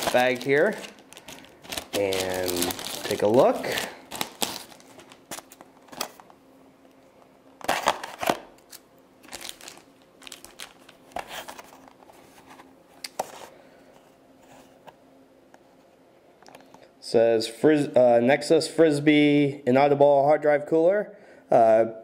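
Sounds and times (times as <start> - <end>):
packaging bag crinkling: 0.0 - 6.3, 7.6 - 12.0.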